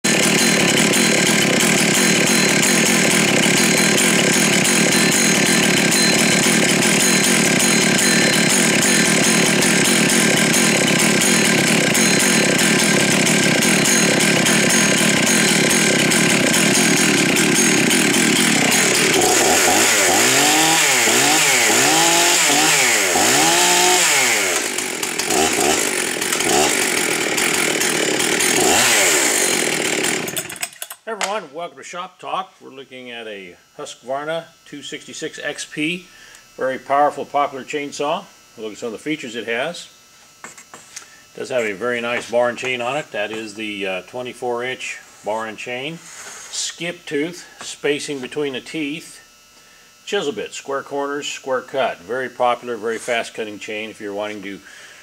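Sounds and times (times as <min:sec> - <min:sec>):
chainsaw revving: 0:00.0 - 0:31.3
chainsaw cutting wood: 0:00.0 - 0:31.4, 0:40.3 - 0:43.8.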